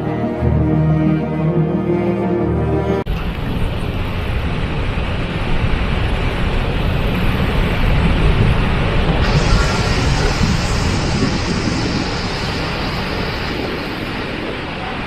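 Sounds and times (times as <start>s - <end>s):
music: 0.0s - 3.1s
waterfall rushing: 9.2s - 15.0s.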